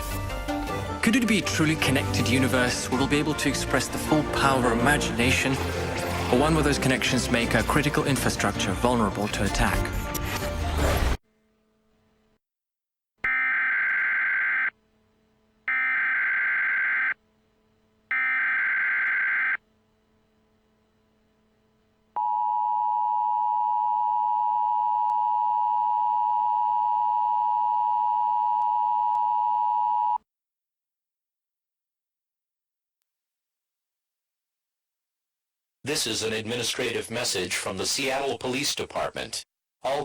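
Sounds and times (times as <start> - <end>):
data signal bursts: 15.7 - 17.2, 18.1 - 19.6.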